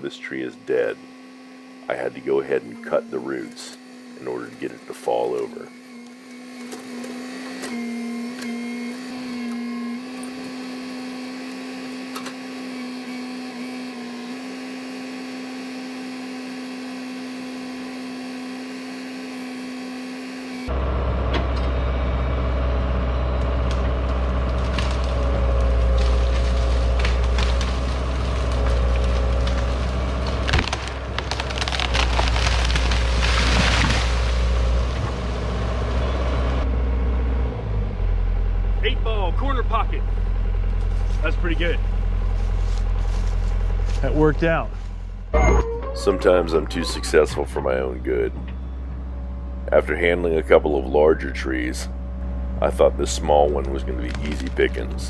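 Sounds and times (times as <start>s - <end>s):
tractor engine rumbling: 0.0s - 10.5s, 20.7s - 55.0s
small engine running: 0.0s - 55.0s
wood cracking and splintering: 23.5s - 35.8s, 53.4s - 55.0s.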